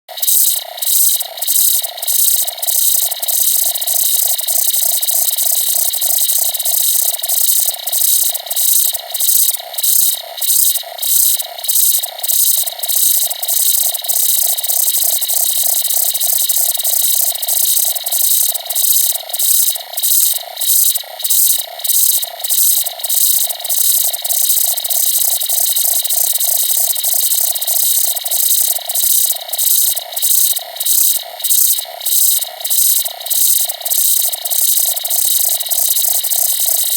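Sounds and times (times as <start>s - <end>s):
electronic signal pulsing: 0.2s - 22.1s.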